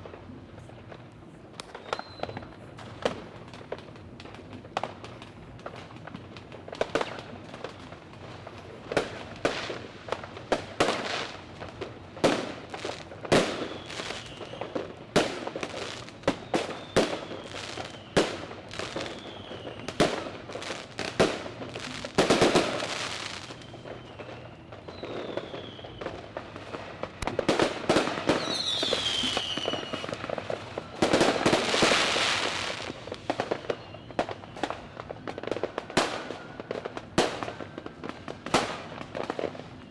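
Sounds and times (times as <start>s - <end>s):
dense firework crackling: 0.0s - 39.9s
fireworks bangs: 0.0s - 39.9s
falling firework whistles: 1.6s - 3.1s, 12.3s - 39.9s.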